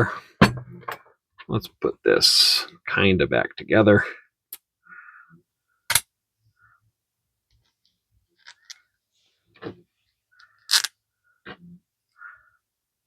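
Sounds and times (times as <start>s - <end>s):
small metal parts clicking: 8.4s - 8.8s, 10.6s - 10.9s.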